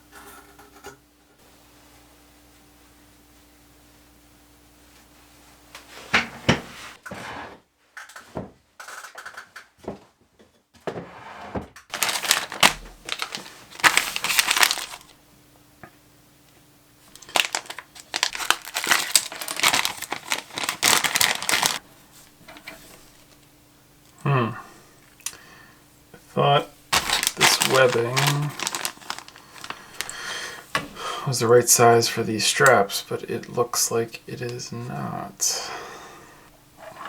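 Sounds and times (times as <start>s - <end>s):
materials crinkling and rustling: 11.9s - 15.2s, 17.0s - 23.5s, 26.8s - 30.9s.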